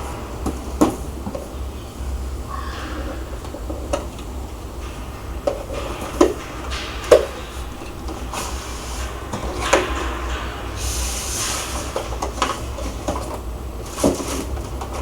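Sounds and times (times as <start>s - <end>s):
sharp knocks: 0.0s - 13.2s
cardboard rustling and scraping: 10.9s - 15.0s.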